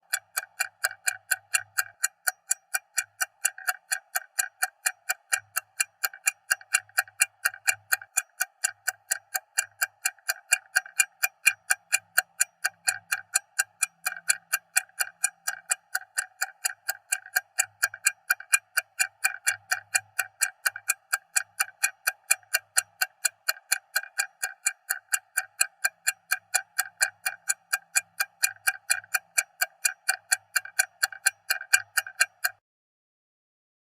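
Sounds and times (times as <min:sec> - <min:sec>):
stopwatch ticking: 0:00.0 - 0:32.6.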